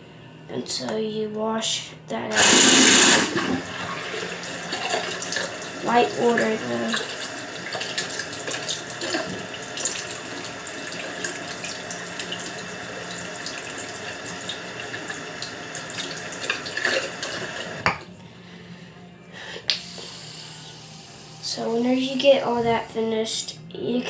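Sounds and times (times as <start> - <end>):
tap water running into sink: 2.4 - 17.8.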